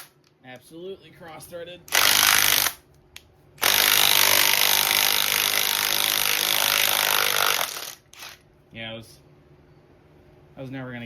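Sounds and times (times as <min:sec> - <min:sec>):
power tool running on a bolt: 0:01.9 - 0:02.7, 0:03.6 - 0:08.4.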